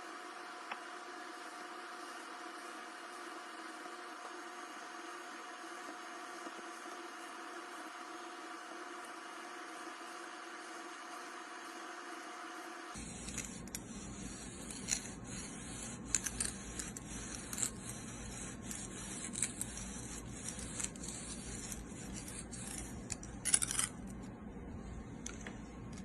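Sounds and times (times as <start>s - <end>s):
crisp scrapes and clicks: 13.0s - 24.3s.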